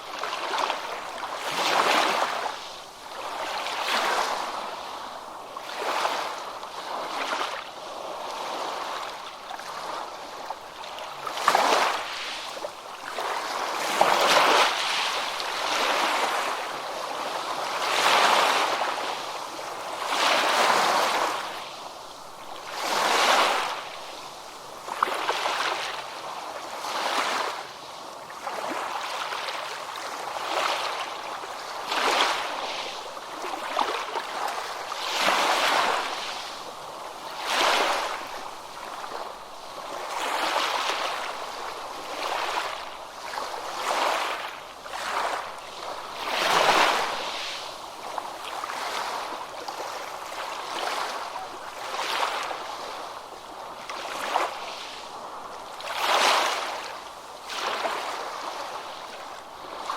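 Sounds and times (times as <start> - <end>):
ocean waves breaking on beach: 0.0 - 59.9.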